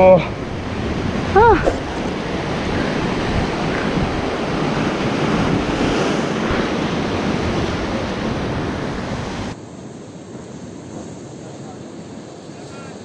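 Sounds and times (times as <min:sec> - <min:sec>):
wind buffeting microphone: 0:00.0 - 0:09.6
surf washing against rocks: 0:00.2 - 0:09.6.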